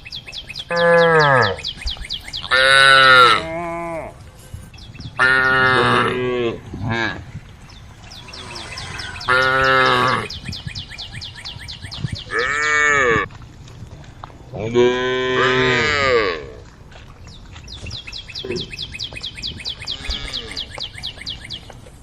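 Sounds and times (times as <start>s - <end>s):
cows mooing: 0.7s - 1.7s, 2.4s - 4.2s, 5.2s - 7.3s, 8.1s - 10.4s, 12.3s - 13.3s, 14.6s - 16.7s, 19.9s - 20.7s.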